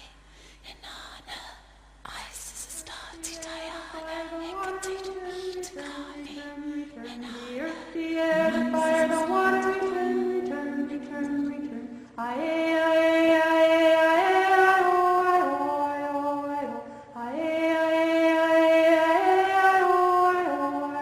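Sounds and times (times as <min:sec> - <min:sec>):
slow melodic chanting: 0:04.3 - 0:21.0.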